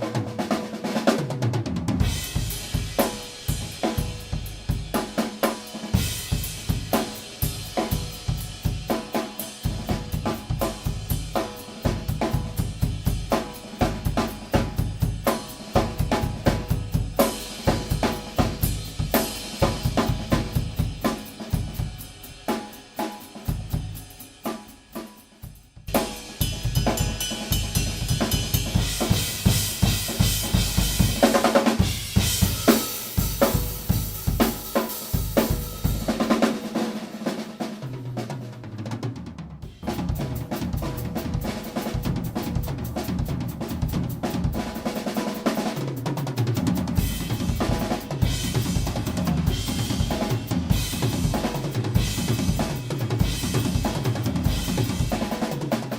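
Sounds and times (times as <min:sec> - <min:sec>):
snare drum: 0:00.0 - 0:55.9
bass drum: 0:02.0 - 0:05.0, 0:09.7 - 0:22.3, 0:25.5 - 0:36.4, 0:39.6 - 0:44.9, 0:46.5 - 0:55.5.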